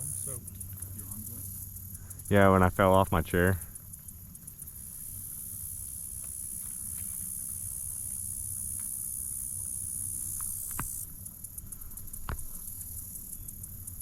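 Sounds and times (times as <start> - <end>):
insect chorus hissing: 0.0 - 14.0
sharp knocks: 12.2 - 12.7.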